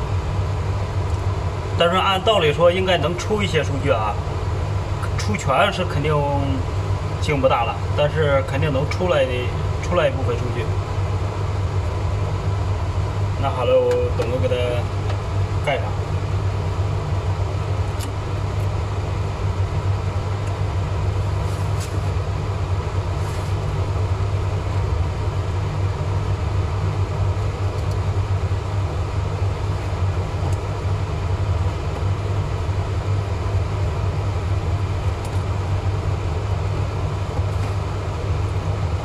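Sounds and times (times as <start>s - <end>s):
air-filtration fans droning: 0.0s - 39.0s.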